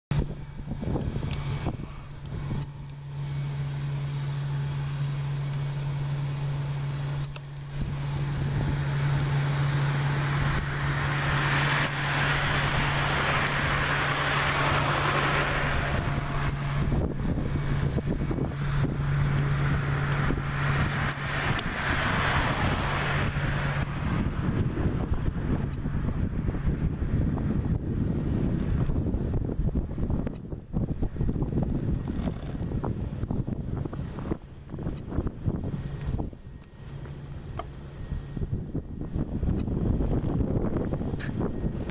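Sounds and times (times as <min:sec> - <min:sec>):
jet airliner taking off: 0:06.4 - 0:27.9.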